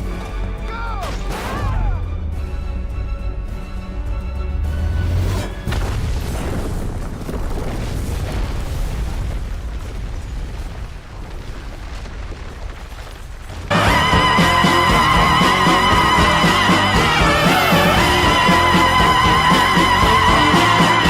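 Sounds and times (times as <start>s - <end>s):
explosion boom and rumble: 1.1s - 13.7s.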